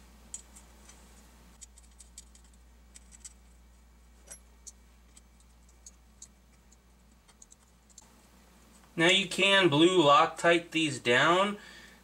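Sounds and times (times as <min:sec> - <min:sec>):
small metallic clicks: 0:01.6 - 0:03.6, 0:04.2 - 0:08.1.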